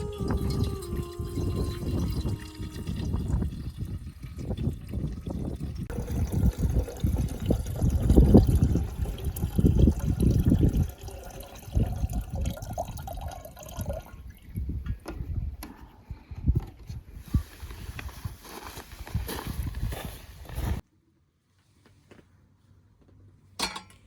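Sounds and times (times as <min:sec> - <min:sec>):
strong wind gusting: 0:00.0 - 0:15.6.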